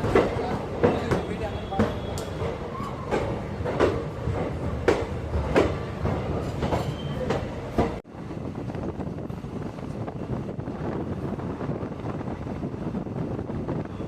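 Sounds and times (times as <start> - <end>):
train wheels clacking over rail joints: 0.0 - 8.0
train rumble: 0.0 - 14.0.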